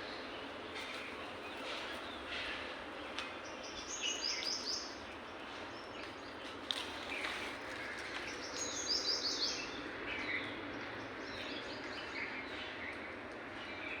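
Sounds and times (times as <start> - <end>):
city background hum: 0.0 - 14.0.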